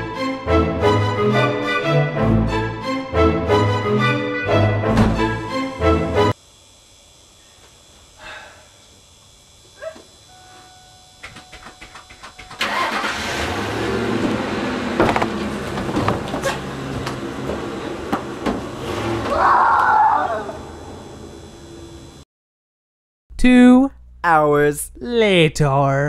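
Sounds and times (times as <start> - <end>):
engine cranking: 12.3 - 14.4
engine revving unevenly: 12.6 - 19.4.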